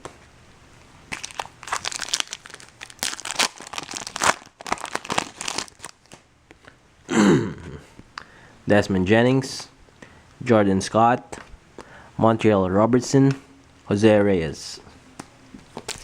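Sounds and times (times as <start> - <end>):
foil wrapper crinkling and tearing: 1.1 - 6.2, 15.8 - 16.0.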